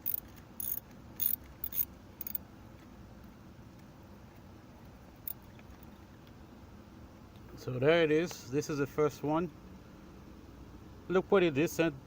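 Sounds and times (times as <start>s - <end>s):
ratchet clicking: 0.0s - 2.4s.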